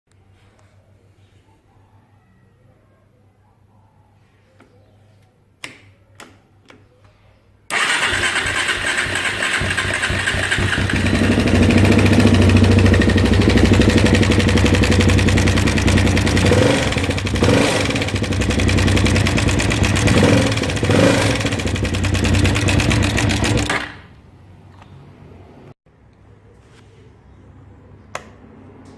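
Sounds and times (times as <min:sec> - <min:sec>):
quad engine starting and idling: 0:07.7 - 0:24.1.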